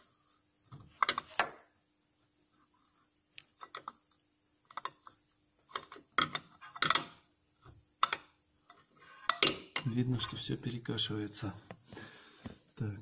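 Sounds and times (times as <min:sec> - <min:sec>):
metallic clicks and knocks: 0:05.7 - 0:07.2.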